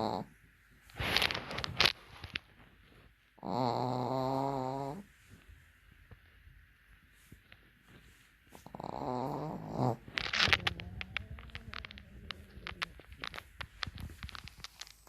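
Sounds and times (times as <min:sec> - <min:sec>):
dog snoring: 0:00.0 - 0:00.3, 0:03.4 - 0:05.1, 0:08.6 - 0:13.1
small clicks: 0:10.0 - 0:15.0.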